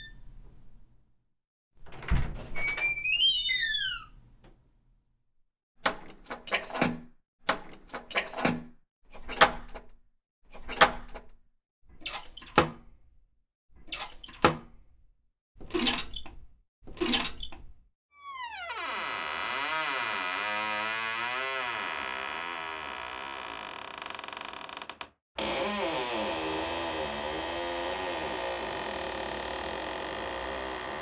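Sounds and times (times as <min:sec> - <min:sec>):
door thud: 0:01.9 - 0:02.6
squeaky door hinge: 0:02.6 - 0:04.1, 0:18.2 - 0:31.0.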